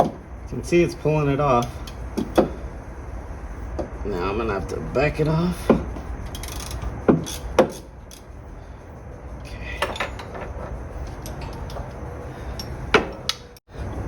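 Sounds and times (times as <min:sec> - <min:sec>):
low steady hum: 0:00.0 - 0:14.0
metal tools clinking: 0:06.2 - 0:08.3, 0:09.5 - 0:13.6.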